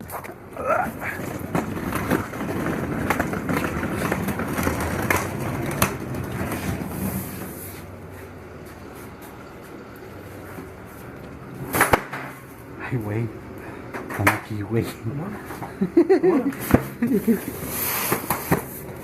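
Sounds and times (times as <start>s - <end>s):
hand cart wheels rolling on pavement: 0.0s - 19.0s
sharp knocks of cart: 0.9s - 7.4s.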